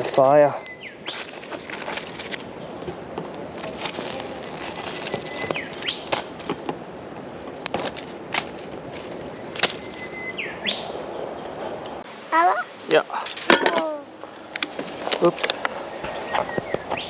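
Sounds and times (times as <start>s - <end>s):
campfire crackling and popping: 0.0s - 10.0s.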